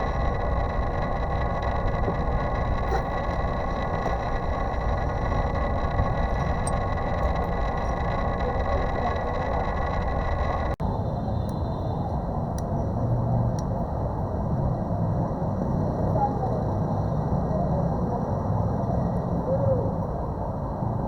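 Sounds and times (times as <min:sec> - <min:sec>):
mechanical hum and rushing: 0:00.0 - 0:11.0
faint high-pitched whines: 0:00.0 - 0:12.2.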